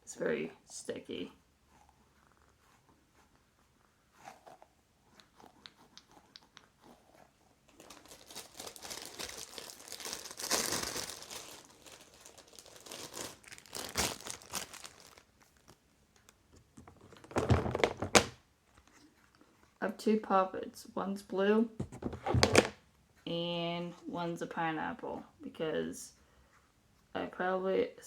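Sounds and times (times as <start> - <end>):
crinkling handling noise: 2.1 - 19.8, 21.8 - 22.8.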